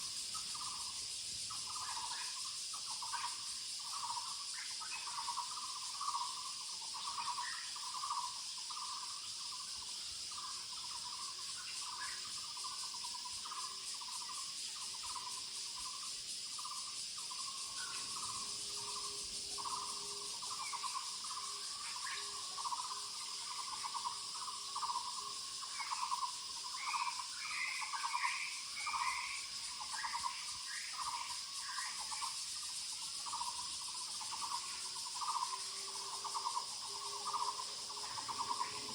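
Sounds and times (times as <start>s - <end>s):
insects hissing: 0.0s - 38.9s.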